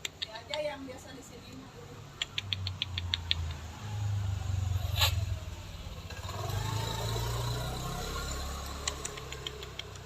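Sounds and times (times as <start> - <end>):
vehicle engine humming: 1.0 - 10.0
sharp click: 2.2 - 3.6, 8.8 - 10.0.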